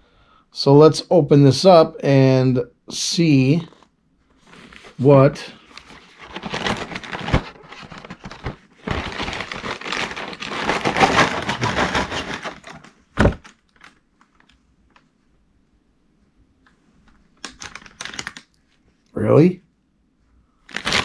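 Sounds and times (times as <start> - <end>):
plastic bag crinkling: 3.5 - 15.0, 17.4 - 18.5, 20.6 - 21.0
cardboard box tearing: 6.2 - 13.4, 20.7 - 21.0.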